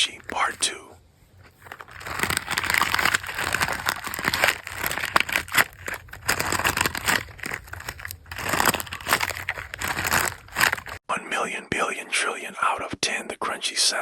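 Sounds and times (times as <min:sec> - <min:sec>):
squishy toy crunchy crackling: 0:00.0 - 0:00.8, 0:01.4 - 0:11.0.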